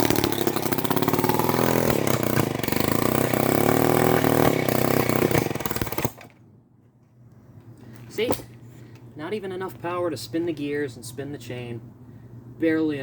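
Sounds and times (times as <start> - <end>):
chainsaw engine running rough: 0.0 - 6.3.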